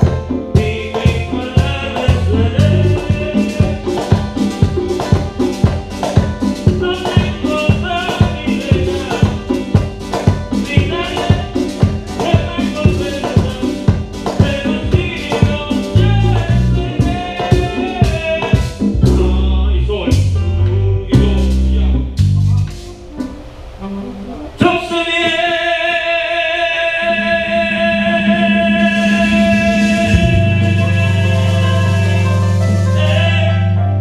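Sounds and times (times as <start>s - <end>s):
drum and bass hits: 0.0s - 25.6s, 28.2s - 34.0s
live band playing: 0.0s - 34.0s
low bass note: 18.7s - 24.8s, 27.9s - 34.0s.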